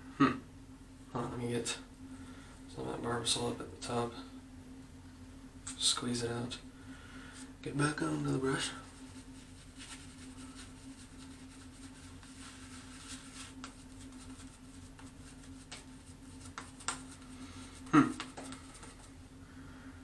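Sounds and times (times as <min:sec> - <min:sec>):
steady low hum: 0:00.0 - 0:20.0
shaving brush swishing lather: 0:08.3 - 0:19.2.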